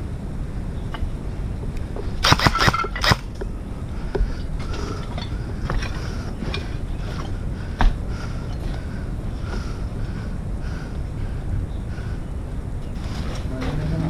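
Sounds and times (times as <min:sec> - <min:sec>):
wind buffeting microphone: 0:00.0 - 0:14.0
sharp mechanical clicks: 0:02.2 - 0:03.5.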